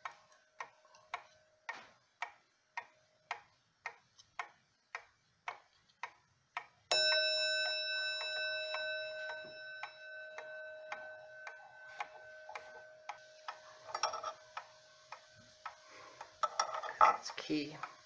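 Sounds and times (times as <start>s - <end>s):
clock ticking: 0.0s - 18.0s
clock chime ringing: 6.9s - 16.7s.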